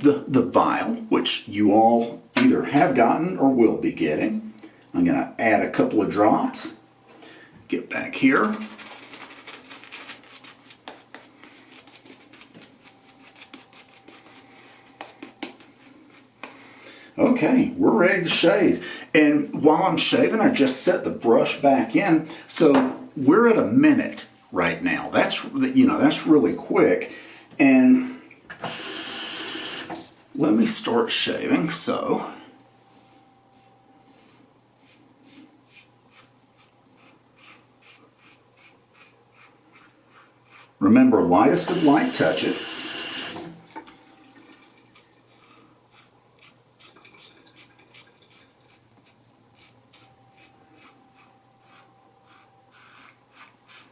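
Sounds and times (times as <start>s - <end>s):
shaving brush swishing in lather: 11.4s - 16.3s, 44.9s - 53.9s
razor scraping stubble: 34.8s - 40.7s, 47.6s - 53.9s.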